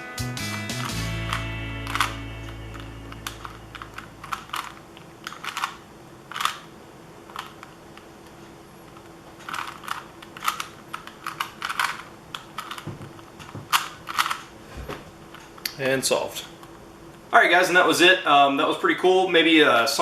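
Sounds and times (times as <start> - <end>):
puzzle cube layers clicking: 0.5 - 6.6, 8.9 - 12.8, 13.4 - 14.4.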